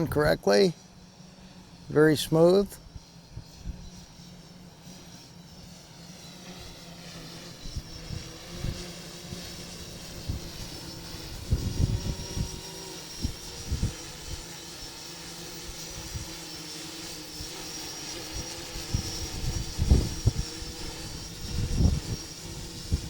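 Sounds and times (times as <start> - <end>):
drone propellers whining: 0.0 - 23.0
wind buffeting microphone: 2.0 - 4.0, 7.6 - 14.5, 18.2 - 23.0.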